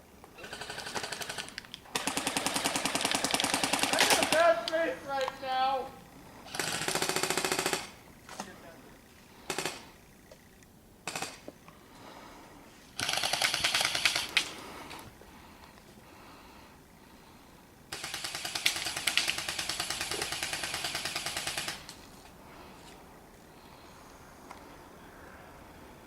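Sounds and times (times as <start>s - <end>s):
airsoft guns firing bursts: 0.4s - 8.6s, 9.4s - 10.0s, 11.0s - 11.5s, 13.0s - 14.6s, 17.9s - 22.0s.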